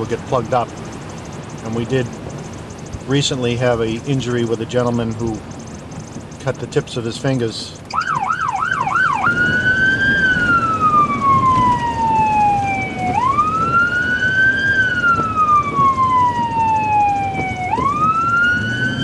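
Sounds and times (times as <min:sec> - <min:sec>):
road and engine noise: 0:00.0 - 0:19.0
electronic siren yelp and wail: 0:07.9 - 0:19.0.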